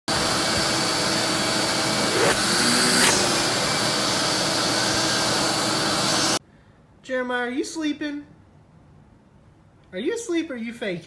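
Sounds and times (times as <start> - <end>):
vacuum cleaner running: 0.1 - 6.4.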